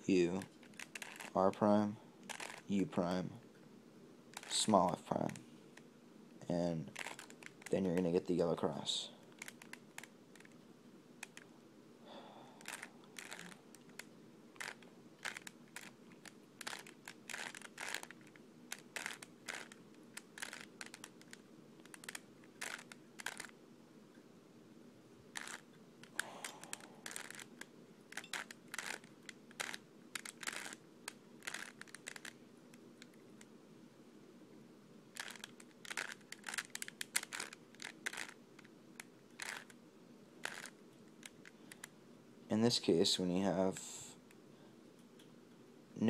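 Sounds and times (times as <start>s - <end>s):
faint steady hum: 0.0s - 46.0s
plastic puzzle cube clicking: 0.6s - 1.4s, 2.2s - 2.6s, 4.4s - 5.4s, 7.0s - 8.0s, 9.3s - 10.6s, 11.2s - 11.4s, 12.6s - 23.5s, 25.4s - 32.4s, 35.2s - 39.8s, 40.4s - 41.9s.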